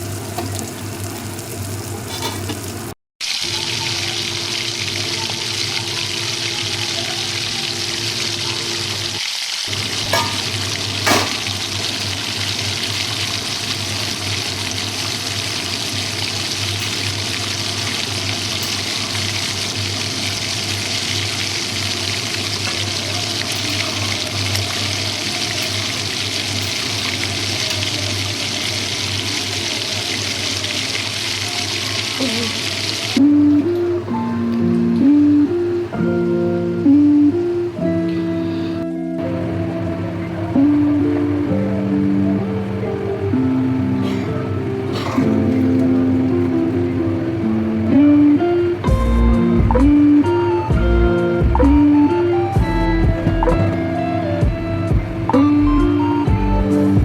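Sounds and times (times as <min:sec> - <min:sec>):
food sizzling in oil: 0:00.0 - 0:34.0.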